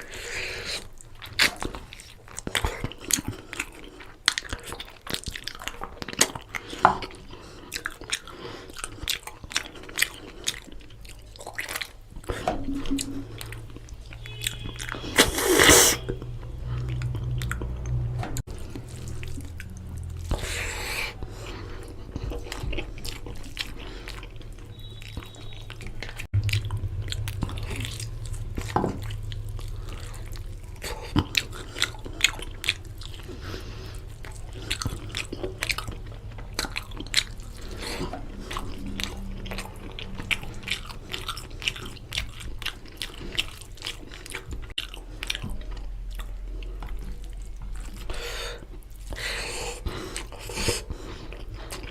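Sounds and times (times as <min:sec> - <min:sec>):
person chewing food: 0:00.0 - 0:51.9.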